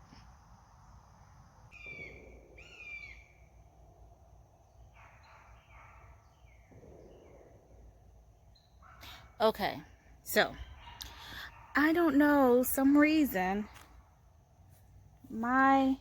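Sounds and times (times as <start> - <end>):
outdoor background noise: 0.0 - 16.0
faint bird calls: 1.7 - 3.6, 4.7 - 9.4.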